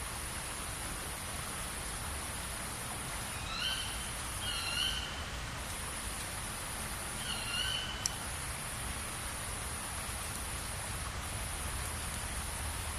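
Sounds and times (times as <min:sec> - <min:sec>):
high-pitched hiss: 0:00.0 - 0:12.9
bird whistled calls: 0:03.4 - 0:05.1, 0:07.2 - 0:08.0.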